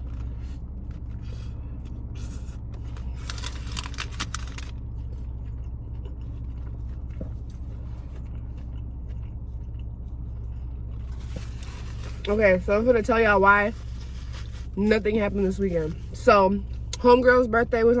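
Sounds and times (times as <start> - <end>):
quiet eating sounds: 0.0 - 12.7
car engine idling: 0.0 - 18.0.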